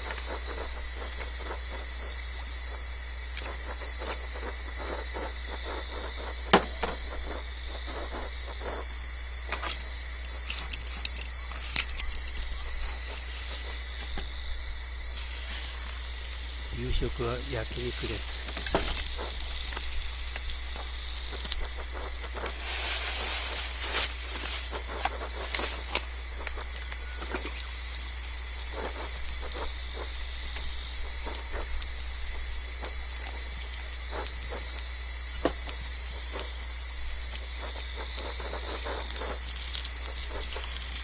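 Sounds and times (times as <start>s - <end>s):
crackles and pops: 0.0s - 41.0s
meat sizzling on a grill: 0.0s - 41.0s.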